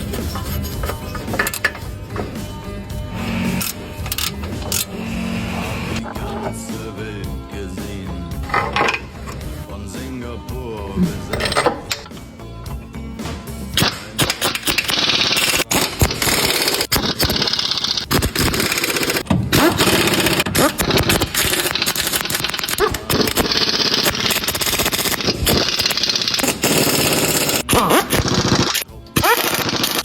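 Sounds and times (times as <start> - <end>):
pneumatic impact wrench hammering: 0.0 - 2.4, 3.1 - 6.4, 13.8 - 30.0.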